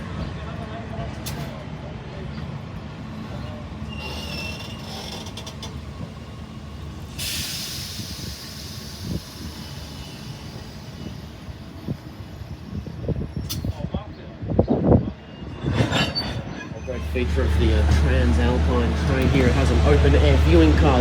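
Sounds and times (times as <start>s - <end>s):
train low rumble: 0.0s - 21.0s
high squeal: 3.8s - 5.5s
air hiss burst: 7.1s - 12.3s.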